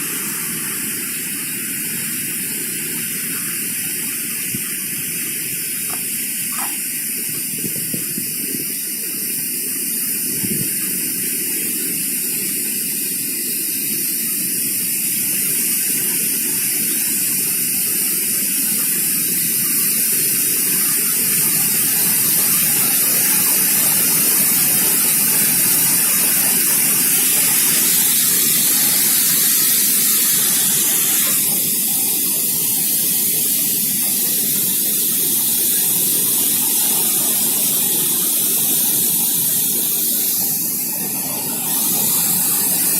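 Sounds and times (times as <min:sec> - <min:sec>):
waterfall roaring: 0:18.9 - 0:42.9.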